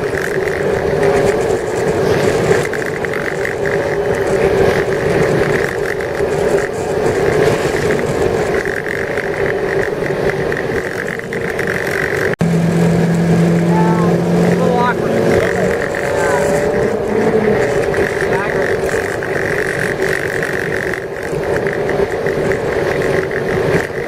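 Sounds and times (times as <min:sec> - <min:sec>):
boat engine running: 0:00.0 - 0:24.0.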